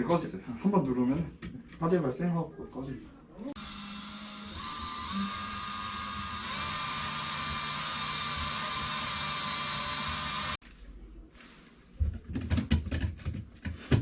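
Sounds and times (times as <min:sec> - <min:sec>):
electric drill whining: 0:03.6 - 0:10.6.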